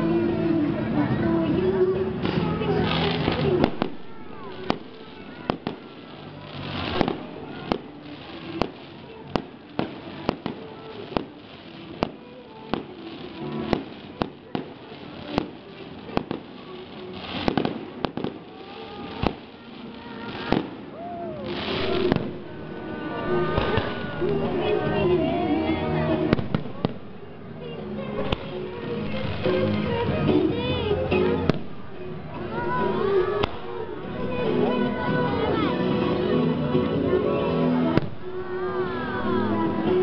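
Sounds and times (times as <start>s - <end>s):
hissing crackle of fireworks: 1.5s - 40.0s
fireworks bangs: 2.2s - 25.4s, 26.3s - 27.3s.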